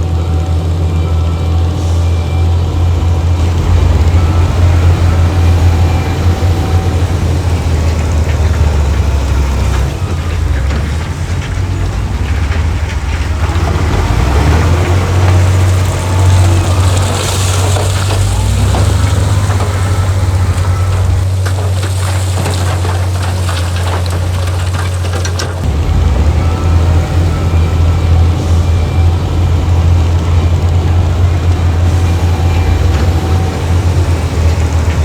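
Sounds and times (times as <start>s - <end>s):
heavy diesel engine rumbling: 0.0s - 35.0s
rushing gritty noise: 0.0s - 35.0s.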